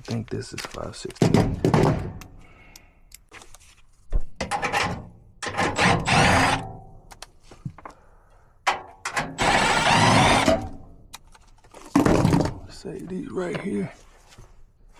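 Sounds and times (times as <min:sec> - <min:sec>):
cordless drill spinning screws: 0:05.8 - 0:06.6, 0:09.4 - 0:10.8.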